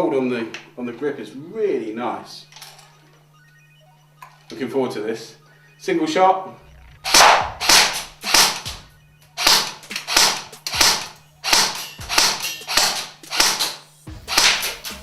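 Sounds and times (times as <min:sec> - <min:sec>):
airsoft gun firing single shots: 0:07.1 - 0:08.7, 0:09.4 - 0:14.8.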